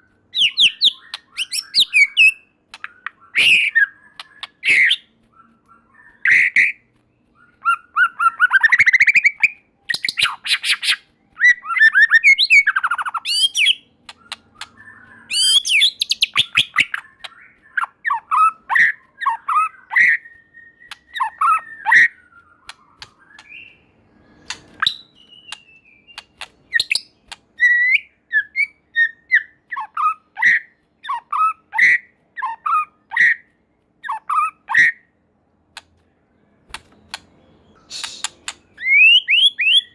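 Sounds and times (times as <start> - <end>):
bird singing trills and whistles: 0.0 - 35.1, 37.1 - 39.9.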